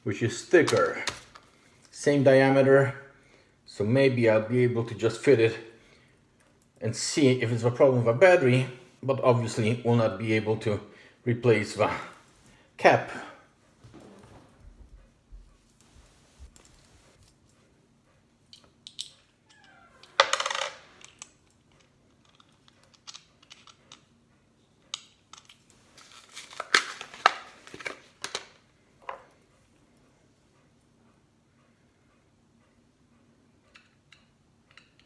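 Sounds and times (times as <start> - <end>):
small metal clicks and rattles: 18.4 - 24.1, 24.9 - 27.3, 33.7 - 35.0.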